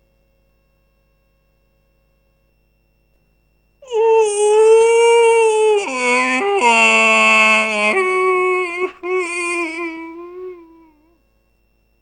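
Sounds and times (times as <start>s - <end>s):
long voice-like call: 3.8s - 11.1s.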